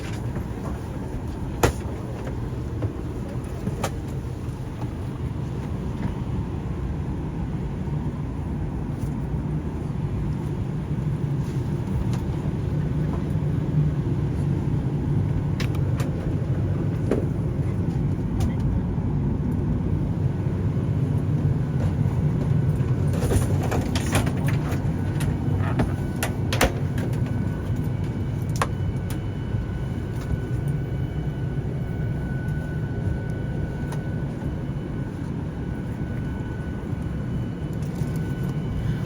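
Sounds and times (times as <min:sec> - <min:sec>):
jet engine cabin rumble: 0:00.0 - 0:39.0.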